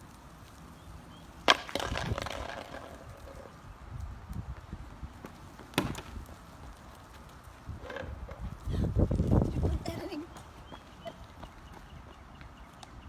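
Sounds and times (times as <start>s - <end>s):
frisbee striking targets: 1.4s - 3.5s, 5.6s - 6.4s
footsteps on pavement: 3.9s - 13.0s.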